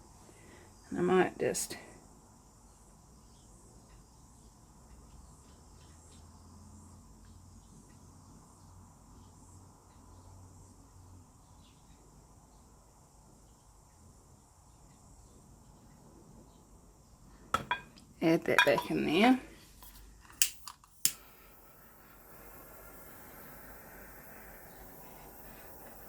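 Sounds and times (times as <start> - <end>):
faint soft ticks: 9.8 - 10.1.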